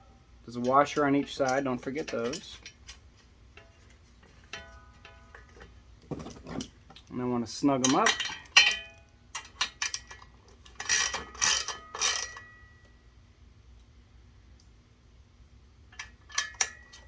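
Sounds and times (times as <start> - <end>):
metallic clinks and rattles: 1.1 - 3.0.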